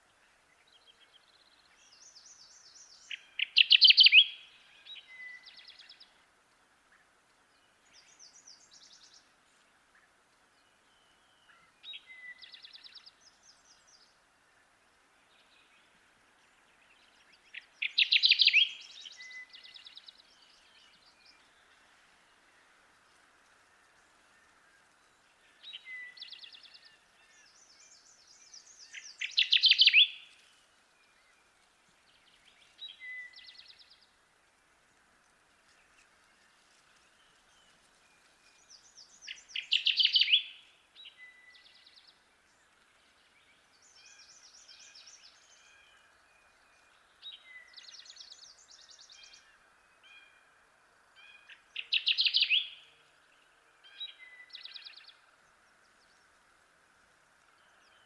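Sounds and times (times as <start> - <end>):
background hiss: 0.0 - 58.0
faint bird song: 0.0 - 58.0
bird chattering song: 17.6 - 20.0, 27.4 - 30.3, 38.7 - 40.6, 51.5 - 52.8.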